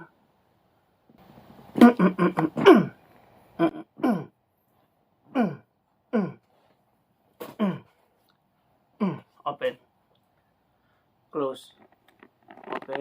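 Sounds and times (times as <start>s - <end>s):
person making short vocal sounds: 1.8s - 3.0s, 3.6s - 4.3s.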